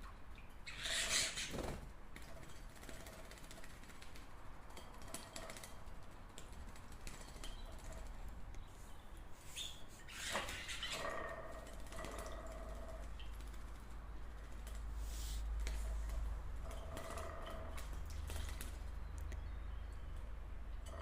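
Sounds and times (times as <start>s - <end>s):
birds clicking and tapping in cage: 1.4s - 8.6s, 10.3s - 15.0s, 15.6s - 21.0s
rustle in cage: 14.7s - 17.7s.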